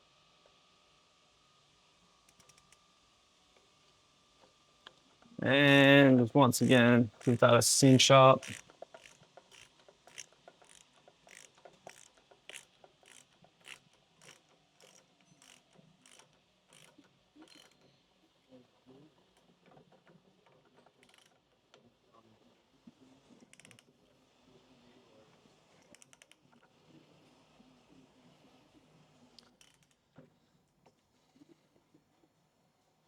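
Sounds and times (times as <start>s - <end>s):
ratchet tool clicking: 8.4s - 16.2s.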